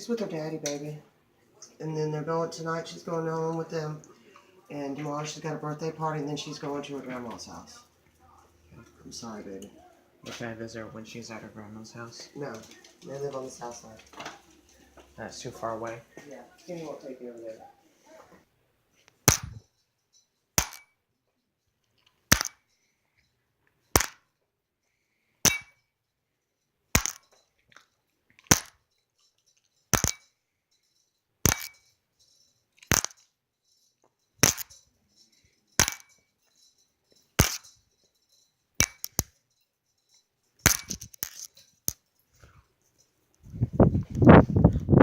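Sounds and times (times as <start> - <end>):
sharp clicks with ringing tail: 19.3 - 21.0, 22.3 - 22.8, 25.4 - 25.8, 28.4 - 42.0.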